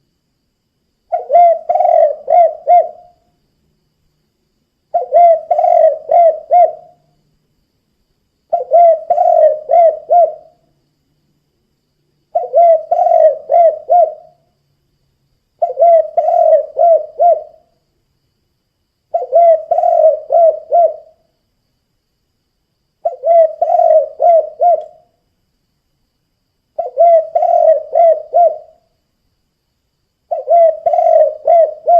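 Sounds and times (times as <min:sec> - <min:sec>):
dove cooing: 0:01.1 - 0:03.2, 0:04.9 - 0:07.1, 0:08.5 - 0:10.6, 0:12.3 - 0:14.4, 0:15.6 - 0:17.7, 0:19.1 - 0:21.2, 0:23.0 - 0:25.1, 0:26.8 - 0:28.8, 0:30.3 - 0:31.9.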